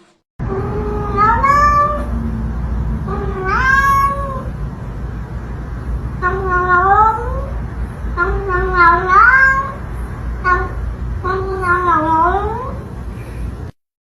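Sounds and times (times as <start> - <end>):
low background rumble: 0.4 - 13.8
cat meowing: 0.5 - 2.2, 3.1 - 4.5, 6.2 - 7.5, 8.2 - 9.8, 10.4 - 12.9.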